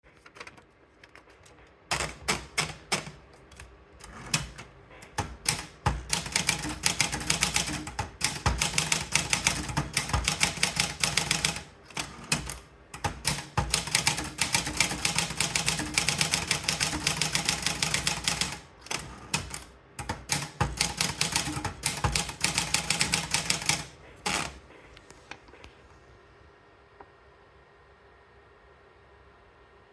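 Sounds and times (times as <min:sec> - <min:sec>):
manual typewriter key strikes: 0:04.1 - 0:24.6.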